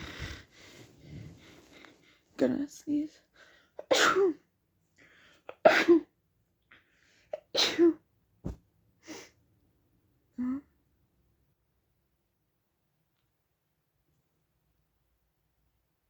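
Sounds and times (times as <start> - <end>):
person sneezing: 3.9 - 4.4.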